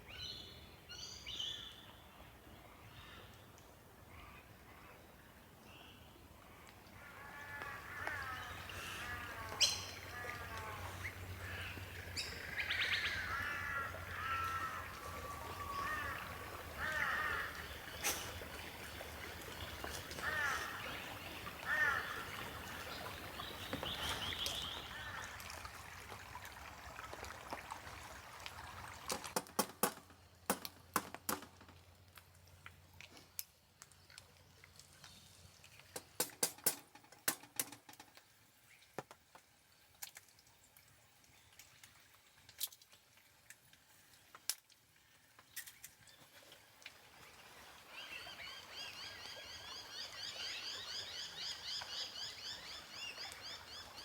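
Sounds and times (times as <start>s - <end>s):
birds calling: 7.0s - 25.6s.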